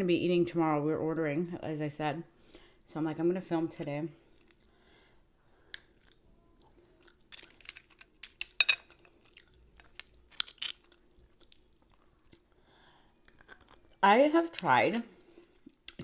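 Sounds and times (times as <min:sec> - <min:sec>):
person chewing food: 0:04.3 - 0:04.8, 0:05.6 - 0:14.0, 0:15.2 - 0:16.0.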